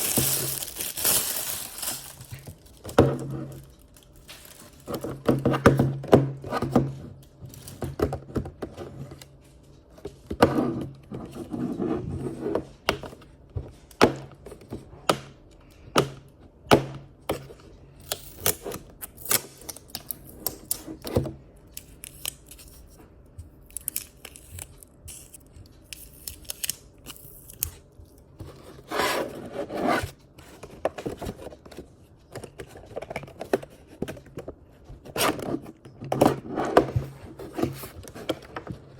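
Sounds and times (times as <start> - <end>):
plastic wrapping crinkling: 0.0 - 5.0
cardboard packaging clicks and scrapes: 0.0 - 6.9, 28.4 - 38.9.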